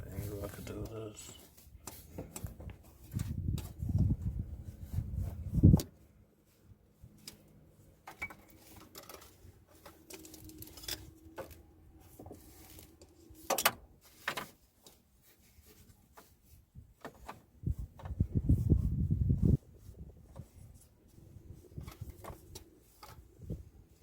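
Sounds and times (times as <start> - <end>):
clicks and knocks of pipe handling: 0.5 - 4.1, 7.1 - 18.2, 21.8 - 23.3.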